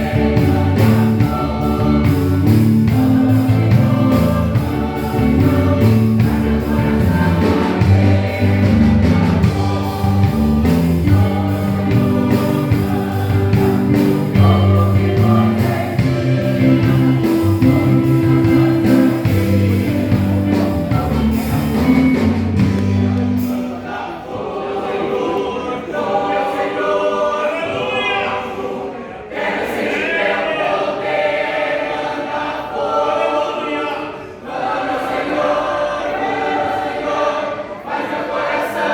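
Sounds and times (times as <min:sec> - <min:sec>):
instrumental backing with bass line: 0:00.0 - 0:23.8
choir singing gospel song: 0:00.0 - 0:38.9.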